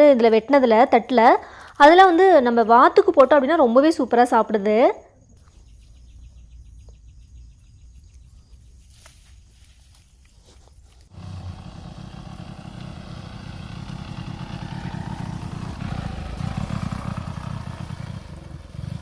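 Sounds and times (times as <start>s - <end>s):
motorcycle engine running: 11.1s - 19.0s.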